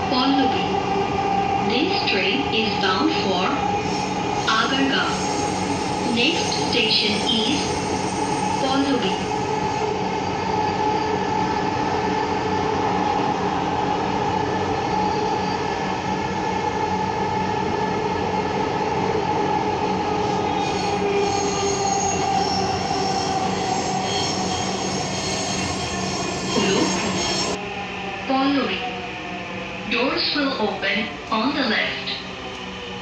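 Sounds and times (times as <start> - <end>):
train wheels rumbling on rails: 19.8 - 27.6
high whining tones: 20.2 - 27.6.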